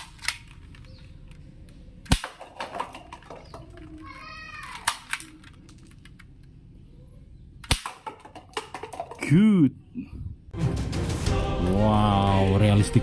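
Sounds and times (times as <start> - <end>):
toy gun plastic clicks: 2.0 - 6.5.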